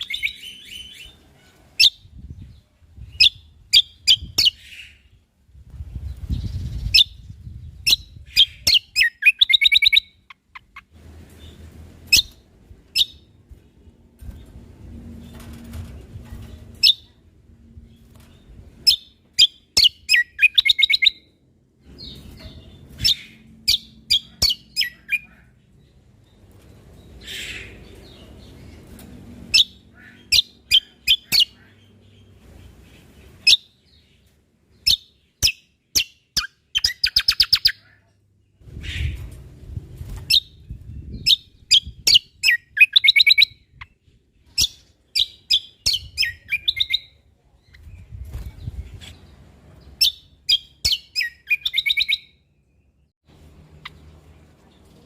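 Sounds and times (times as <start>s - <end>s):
songbird chirps and trills: 0.0s - 55.0s.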